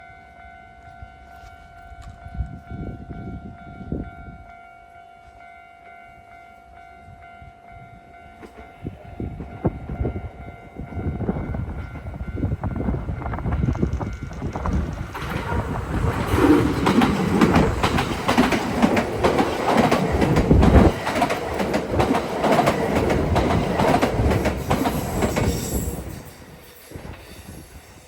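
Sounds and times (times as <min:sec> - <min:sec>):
level crossing warning bell: 0:00.0 - 0:13.5
electric train rumble and clatter: 0:07.1 - 0:28.0.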